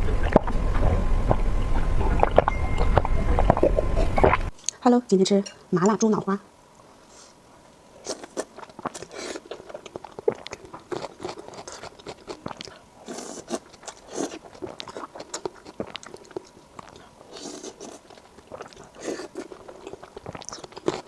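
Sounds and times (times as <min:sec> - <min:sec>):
person chewing wet food: 0:08.0 - 0:21.0
lip smacks and mouth clicks: 0:08.1 - 0:21.0.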